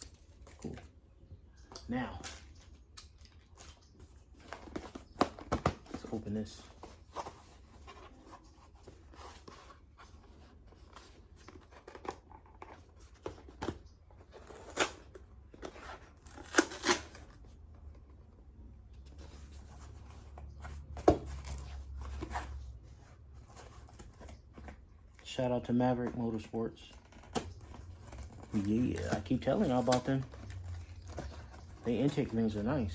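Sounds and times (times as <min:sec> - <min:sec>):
packaging snipping and tearing: 0:14.4 - 0:17.4, 0:27.0 - 0:31.8
packaging rustling: 0:26.9 - 0:32.9.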